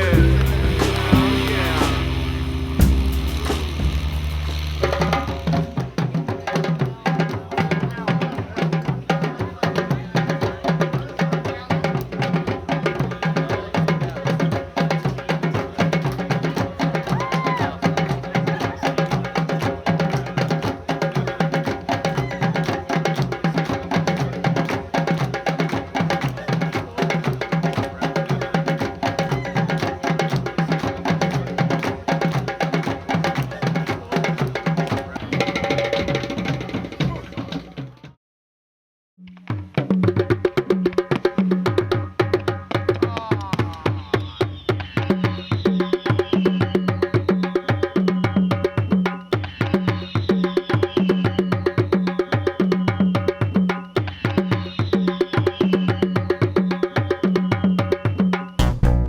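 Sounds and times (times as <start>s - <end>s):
sustained low tones: 0.0s - 5.5s
sharp clicking percussion beat: 0.0s - 37.6s, 39.3s - 59.0s.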